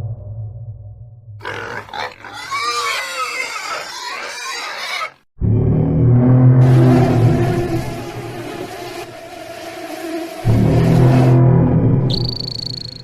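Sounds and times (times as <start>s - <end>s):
high animal call: 1.4s - 5.2s.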